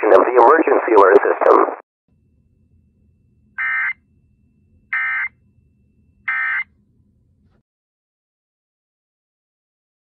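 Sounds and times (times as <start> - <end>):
faint low hum: 0.0 - 7.6.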